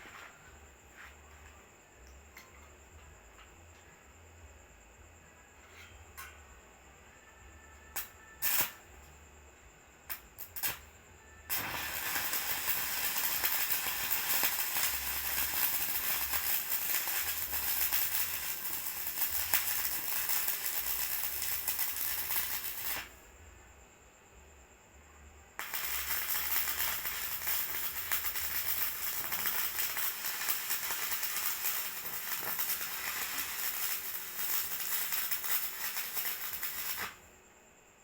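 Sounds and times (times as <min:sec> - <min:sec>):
arc welding crackling: 0:08.0 - 0:08.8, 0:10.1 - 0:10.9, 0:11.5 - 0:23.2, 0:25.6 - 0:37.2.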